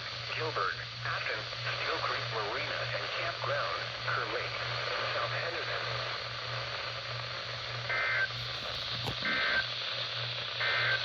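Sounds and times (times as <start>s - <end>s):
radio hiss and hum: 8.4s - 9.6s.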